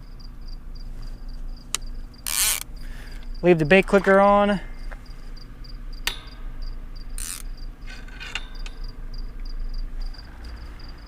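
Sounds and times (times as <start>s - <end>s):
crickets chirping: 0.0s - 11.0s
sharp click: 6.0s - 6.4s.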